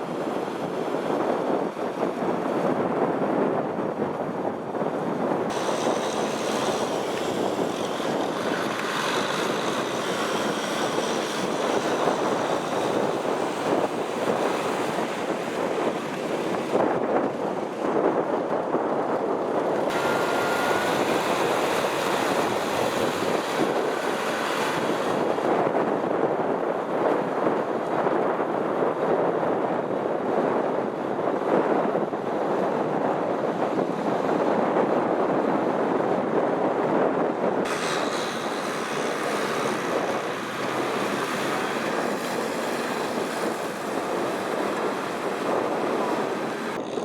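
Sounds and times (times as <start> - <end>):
wind on microphone: 0.0 - 47.0
tractor diesel engines: 4.2 - 35.8, 36.4 - 47.0
churning mud and water: 5.5 - 28.2, 37.6 - 47.0.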